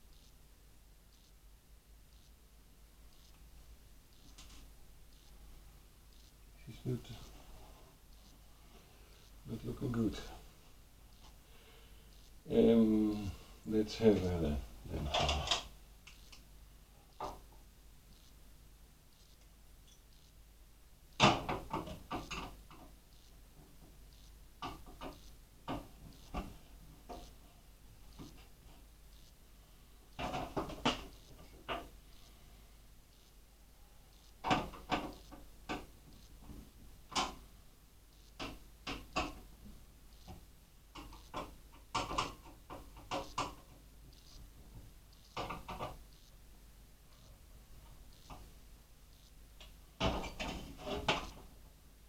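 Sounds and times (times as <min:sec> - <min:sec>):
computer hardware and tools clicking: 0:02.1 - 0:02.3, 0:03.1 - 0:03.4, 0:04.1 - 0:05.4, 0:15.0 - 0:16.5, 0:18.1 - 0:18.4, 0:19.1 - 0:20.4, 0:24.1 - 0:26.5, 0:30.1 - 0:32.3, 0:34.1 - 0:36.4, 0:40.1 - 0:44.4, 0:45.1 - 0:46.4, 0:48.1 - 0:48.5, 0:49.1 - 0:51.4.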